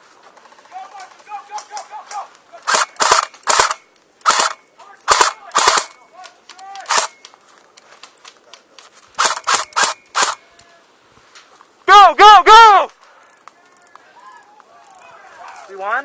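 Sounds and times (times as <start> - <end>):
airsoft gun shots: 2.7 - 6.0, 9.2 - 10.4.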